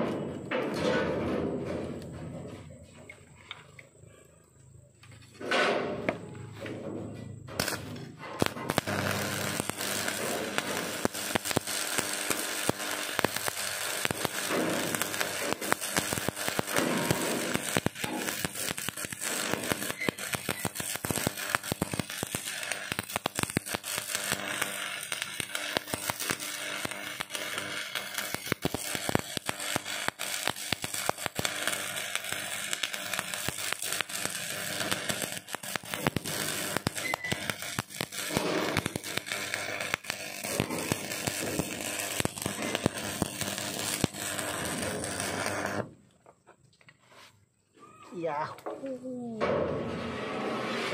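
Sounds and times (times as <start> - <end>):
arc welding crackle: 7.5 - 46.0.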